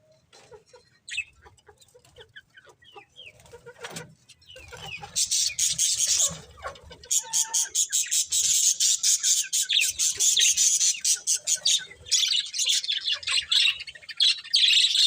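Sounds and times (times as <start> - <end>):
budgerigars chirping: 4.5 - 15.0.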